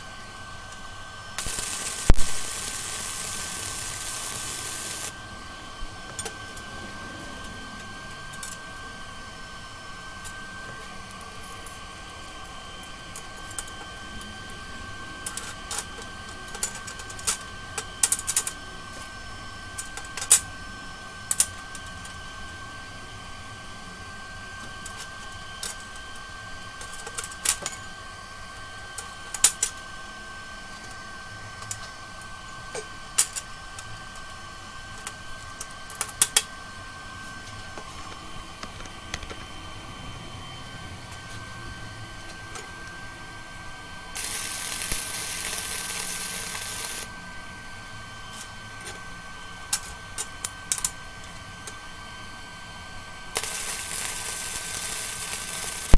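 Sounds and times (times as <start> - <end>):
steady high hum: 0.0 - 16.6, 42.1 - 48.3, 53.2 - 55.9.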